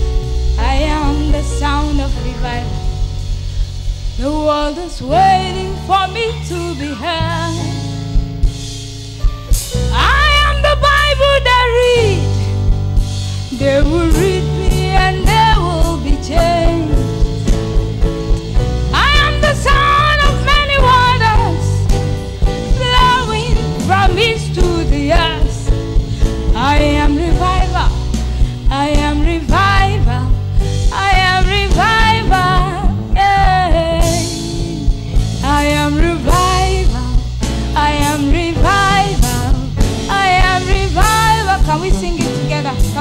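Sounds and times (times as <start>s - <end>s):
band with bass and drums: 0.0s - 43.0s
choir singing gospel: 38.2s - 41.6s.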